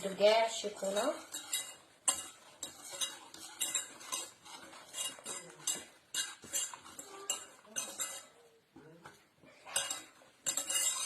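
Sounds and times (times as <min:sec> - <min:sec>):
utensil scraping and clinking in pot: 0:00.0 - 0:11.0.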